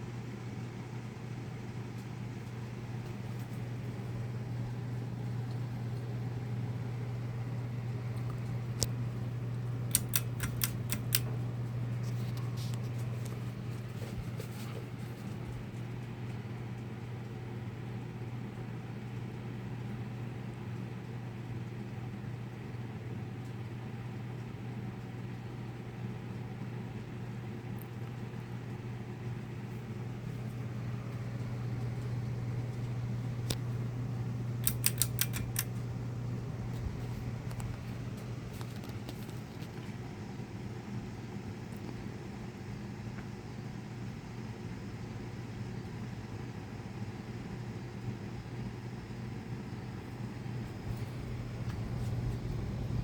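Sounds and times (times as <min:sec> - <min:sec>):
ceiling fan motor hum: 0:00.0 - 0:53.0
light clicks: 0:09.9 - 0:11.3, 0:34.6 - 0:35.8.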